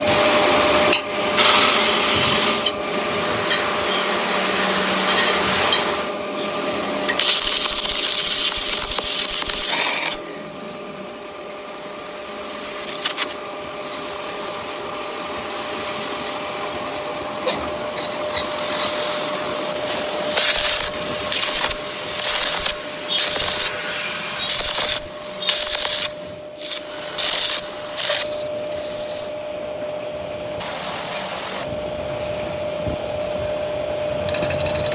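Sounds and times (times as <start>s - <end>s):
loud hiss: 0.0s - 34.9s
power machinery humming: 0.0s - 34.9s
short hissing bursts: 3.9s - 10.2s, 18.6s - 30.7s.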